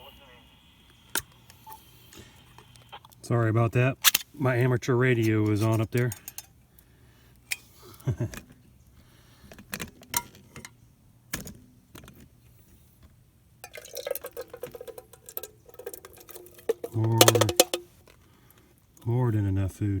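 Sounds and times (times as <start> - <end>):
metal mess kit clinking: 5.4 - 6.5, 13.6 - 18.0
food rattling into a pot: 13.6 - 18.0.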